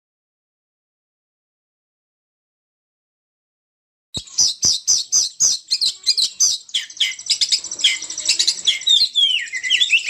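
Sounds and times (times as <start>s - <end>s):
bird chirping and twittering: 4.2s - 10.0s.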